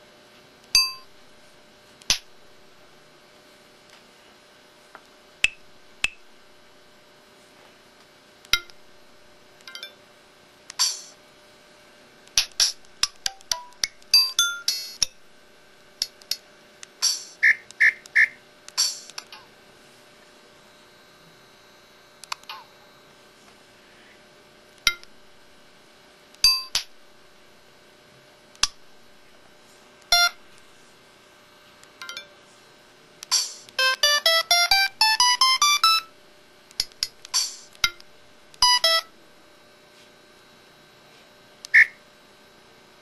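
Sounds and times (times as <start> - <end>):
electronic chimes and beeps: 30.1 - 30.4, 38.6 - 39.1, 41.7 - 42.0.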